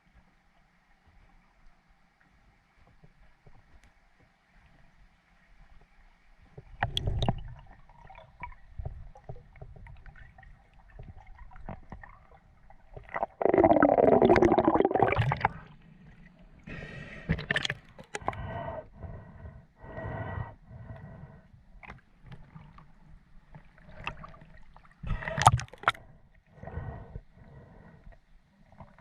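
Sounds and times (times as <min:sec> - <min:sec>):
water gurgling and bubbling: 0:13.0 - 0:15.7.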